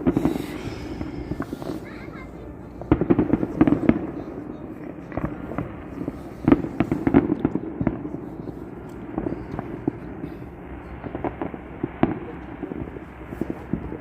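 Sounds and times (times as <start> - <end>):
fireworks bangs and crackles: 0.0 - 14.0.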